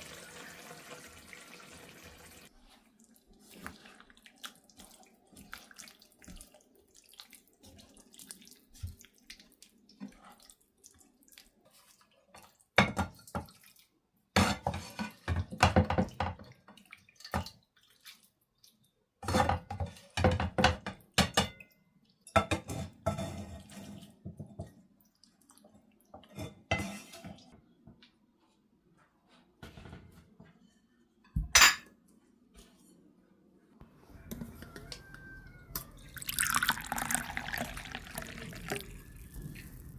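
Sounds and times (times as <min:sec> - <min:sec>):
water pouring and splashing: 0:00.0 - 0:13.9, 0:15.9 - 0:18.9, 0:35.9 - 0:39.9
dishes clinking: 0:31.3 - 0:31.9.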